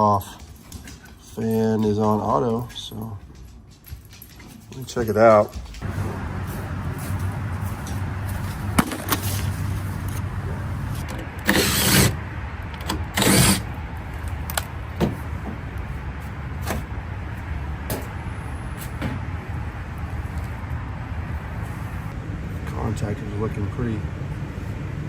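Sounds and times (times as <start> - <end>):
handling clicks and knocks: 0.0 - 11.4
heat pump humming: 5.8 - 25.0.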